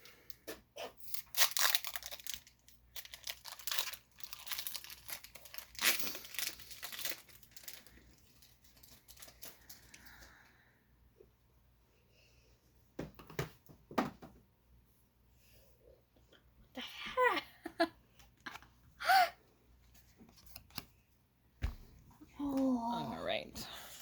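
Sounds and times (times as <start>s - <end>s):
foil wrapper crinkling and tearing: 1.0s - 10.2s.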